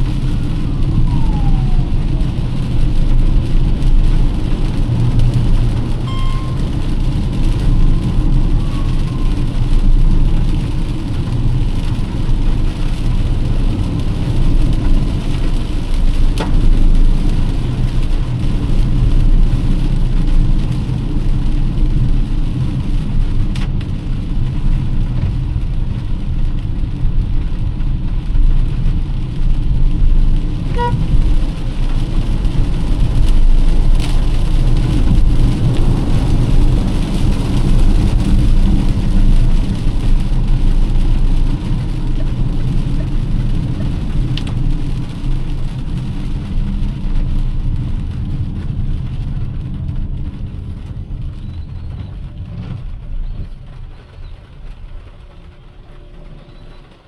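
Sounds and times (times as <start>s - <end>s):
car road and engine rumble: 0.0s - 57.0s
rain hissing: 0.0s - 57.0s
short high tones: 6.0s - 6.7s.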